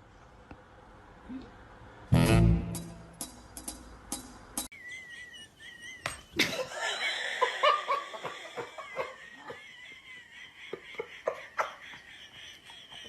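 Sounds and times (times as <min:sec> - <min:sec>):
person laughing: 0:04.8 - 0:13.0.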